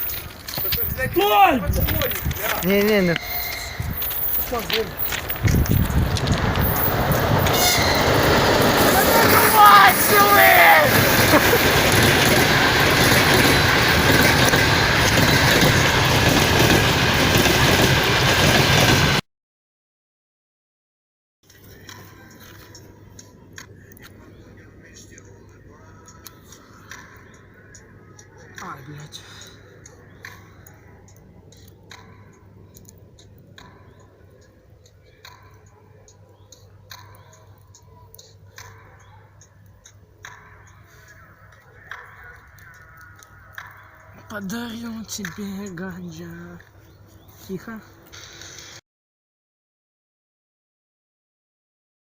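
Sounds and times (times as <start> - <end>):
train passing with rail noise: 0.0 - 19.2.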